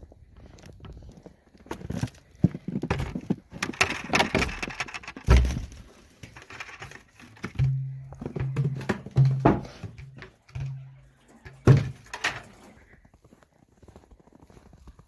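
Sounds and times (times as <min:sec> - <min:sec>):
knocks and clatter of handling: 0:01.7 - 0:12.9
heavy thump: 0:05.2 - 0:05.8, 0:07.5 - 0:10.8
footsteps crunching through snow: 0:12.6 - 0:15.0.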